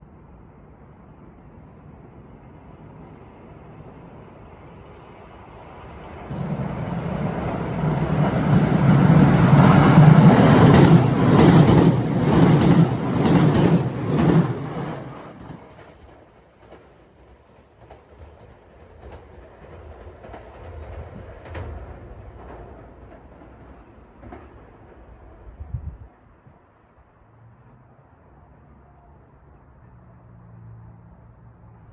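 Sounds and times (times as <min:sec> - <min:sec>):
train passing: 0:00.1 - 0:31.9
wheels clattering over rail joints: 0:07.5 - 0:16.0.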